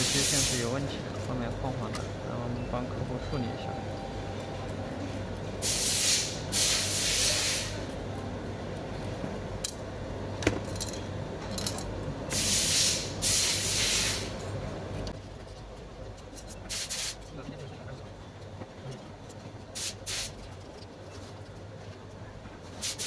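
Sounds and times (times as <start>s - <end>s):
hissing spray bursts: 0.0s - 0.7s, 5.6s - 7.8s, 12.3s - 14.3s, 16.7s - 17.2s, 19.8s - 20.4s, 22.8s - 23.0s.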